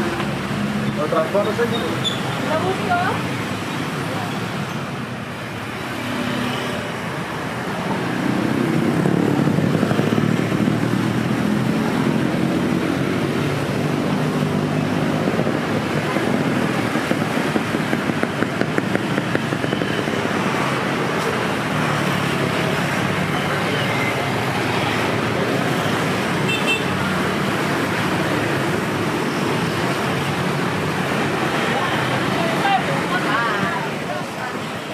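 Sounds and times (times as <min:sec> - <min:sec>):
motor vehicles passing: 0:00.0 - 0:34.9.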